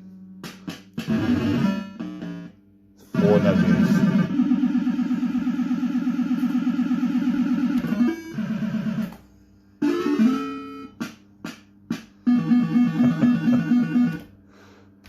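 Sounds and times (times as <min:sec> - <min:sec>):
rising electronic jingle: 0:03.2 - 0:06.0
fast warbling electronic tones: 0:03.2 - 0:06.2.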